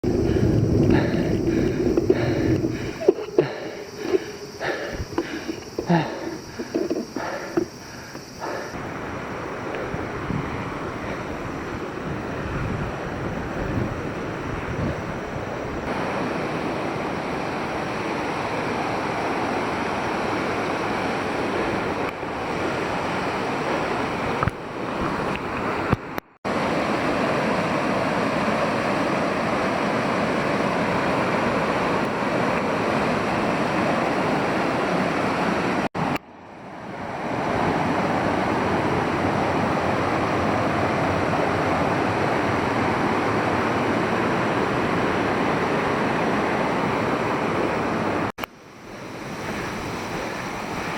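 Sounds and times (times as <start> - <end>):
waterfall rushing: 0.0 - 9.5, 15.9 - 24.4.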